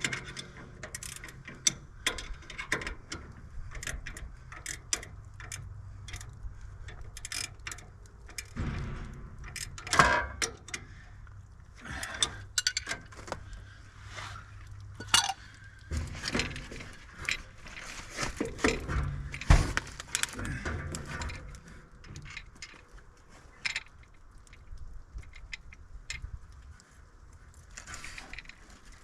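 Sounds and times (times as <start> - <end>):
ratchet clicks: 0.0 - 10.8
low steady hum: 0.0 - 29.0
metal hand tools clinking: 15.0 - 15.4.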